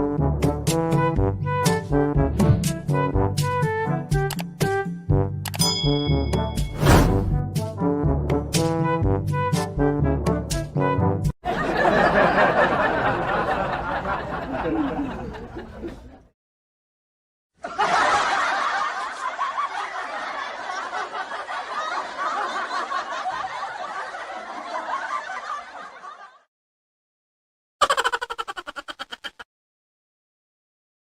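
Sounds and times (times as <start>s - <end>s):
laugh sound effect: 27.8s - 29.5s.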